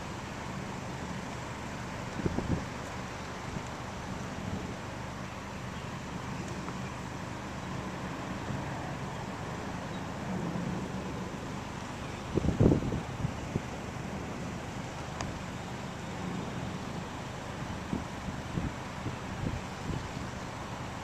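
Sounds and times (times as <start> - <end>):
wind gust buffeting microphone: 0.0 - 21.0
strong storm wind rushing: 2.0 - 2.8, 7.7 - 20.4.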